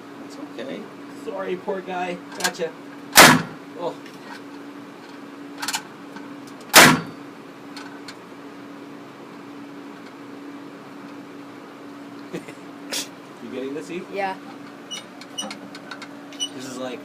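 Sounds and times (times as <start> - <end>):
gatling gun shot: 3.1 - 3.6, 6.7 - 7.2
faint short bang: 6.7 - 7.2.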